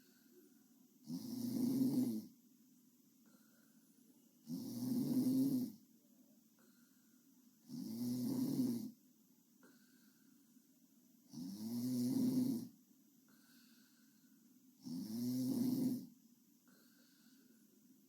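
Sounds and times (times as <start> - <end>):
girl snoring: 1.0 - 2.3, 4.5 - 5.8, 7.6 - 9.0, 11.3 - 12.7, 14.8 - 16.1.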